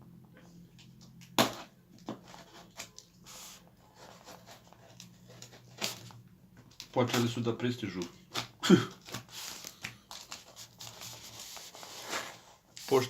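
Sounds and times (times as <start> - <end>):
packaging rustling: 8.2 - 13.0.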